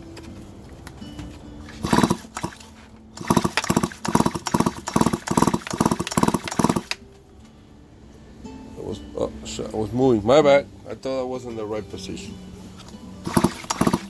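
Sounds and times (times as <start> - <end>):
recoil starter pulls whirring: 1.6 - 7.0, 13.2 - 14.0.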